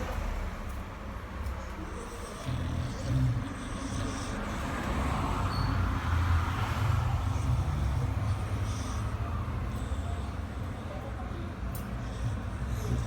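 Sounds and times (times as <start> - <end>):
snoring: 1.6 - 10.4, 12.0 - 13.0.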